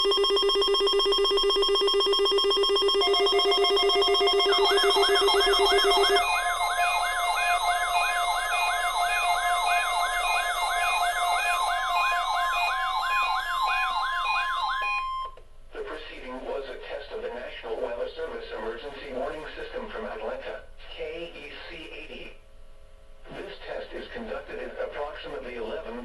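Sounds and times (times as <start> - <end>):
rapidly pulsing low buzz: 0.0 - 14.0
steady electronic tones: 0.0 - 15.4
steady high beeping: 0.0 - 15.4
wailing siren: 0.0 - 15.4.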